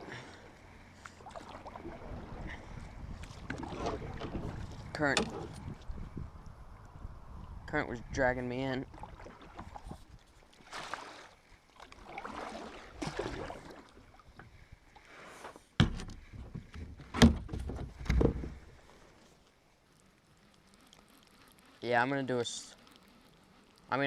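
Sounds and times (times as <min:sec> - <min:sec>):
paddle strokes swishing through water: 0:00.0 - 0:06.0, 0:08.9 - 0:21.9.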